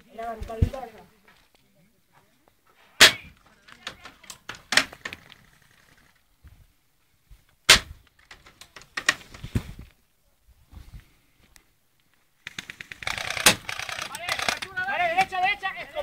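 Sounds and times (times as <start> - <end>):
airsoft gun shots cracking: 3.0 - 3.4, 7.7 - 8.0
small clicks and knocks: 8.0 - 9.5.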